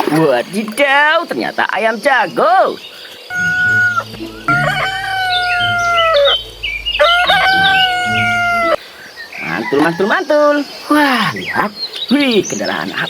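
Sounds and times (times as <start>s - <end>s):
rooster crowing: 3.3s - 10.3s.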